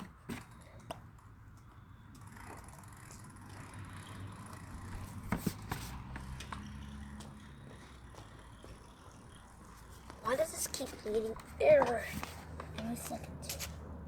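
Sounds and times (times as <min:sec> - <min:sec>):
low engine-like hum: 0:01.4 - 0:11.4.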